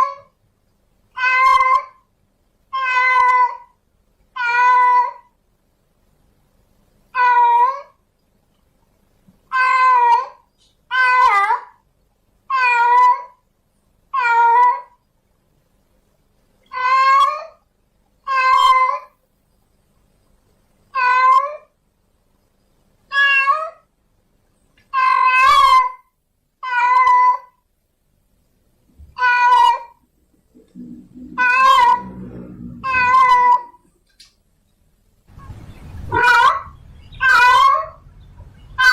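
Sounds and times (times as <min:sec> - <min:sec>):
cat meowing: 0:01.2 - 0:02.0, 0:02.7 - 0:03.7, 0:04.4 - 0:05.3, 0:07.2 - 0:08.0, 0:09.5 - 0:11.8, 0:12.5 - 0:13.4, 0:14.1 - 0:15.0, 0:16.7 - 0:17.6, 0:18.2 - 0:19.2, 0:20.9 - 0:21.7, 0:23.1 - 0:23.9, 0:24.9 - 0:27.6, 0:29.1 - 0:30.0, 0:31.2 - 0:33.8, 0:36.1 - 0:38.0.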